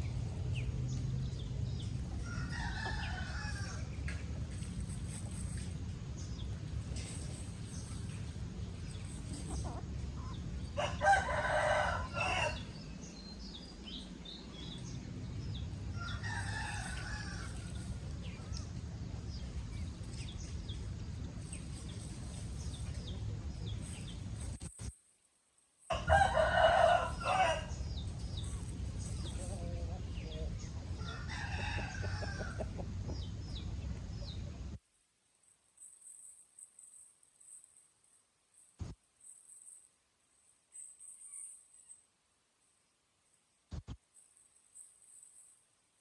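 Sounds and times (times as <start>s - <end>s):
steady low rumble: 0.0s - 10.8s, 12.6s - 24.9s
rooster crowing: 2.2s - 3.9s, 10.8s - 12.7s, 16.0s - 17.8s, 25.9s - 27.8s, 31.0s - 32.8s
chicken calls: 25.9s - 34.6s.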